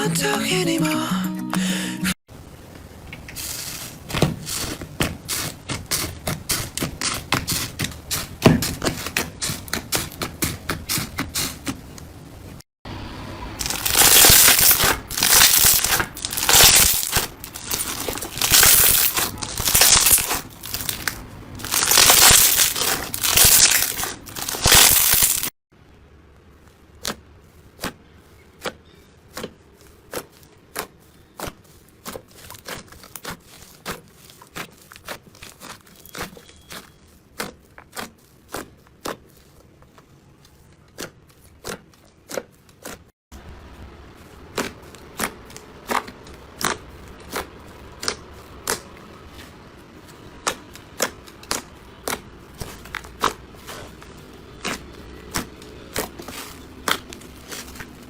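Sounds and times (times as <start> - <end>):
slime crackling and crunching: 3.4 - 11.5, 13.6 - 25.6, 29.8 - 43.0, 43.8 - 58.0.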